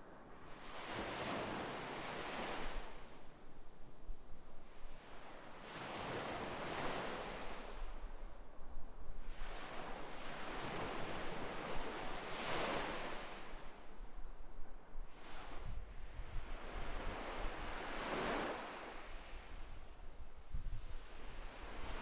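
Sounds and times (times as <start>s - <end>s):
ocean waves breaking on shore: 0.6s - 2.9s, 16.6s - 19.6s.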